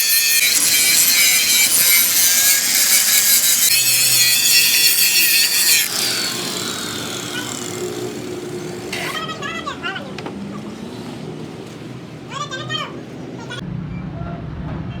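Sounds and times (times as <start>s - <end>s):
power tool grinding metal: 0.0s - 10.0s.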